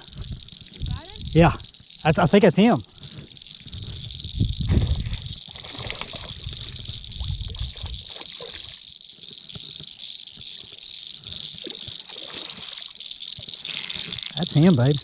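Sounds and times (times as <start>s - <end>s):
low rumble on microphone: 0.0s - 1.7s, 3.0s - 5.4s, 6.2s - 8.1s
insects chorus: 0.0s - 15.0s
fish splashing in water: 4.7s - 8.9s, 11.5s - 14.4s.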